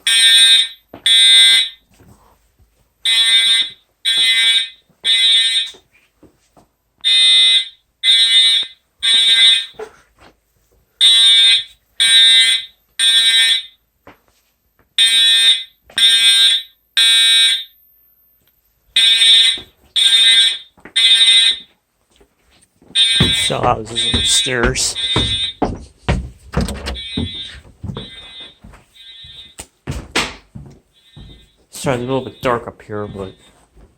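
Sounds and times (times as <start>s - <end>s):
fire alarm horn blasts: 0.0s - 1.8s, 3.0s - 5.8s, 7.0s - 9.8s, 11.0s - 13.8s, 15.0s - 18.0s, 19.0s - 21.7s, 23.0s - 25.7s, 26.9s - 29.6s, 30.9s - 33.6s.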